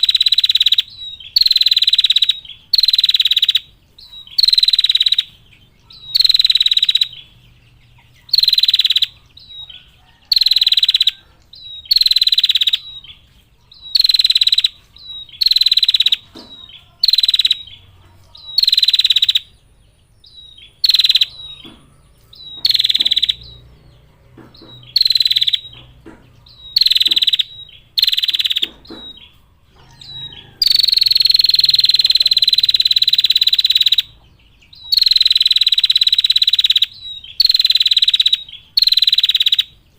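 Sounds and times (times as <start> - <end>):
bird rattling call: 20.8 - 23.6, 24.4 - 34.1.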